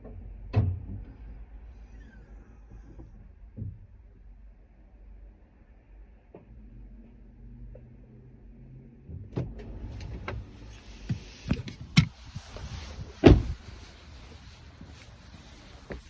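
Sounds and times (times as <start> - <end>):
truck door and hood clunks: 9.4 - 13.8.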